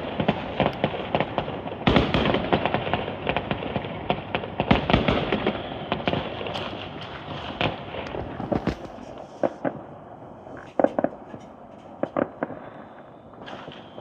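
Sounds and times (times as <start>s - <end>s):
distant fireworks rumble: 0.0s - 14.0s
fireworks bangs: 0.0s - 14.0s.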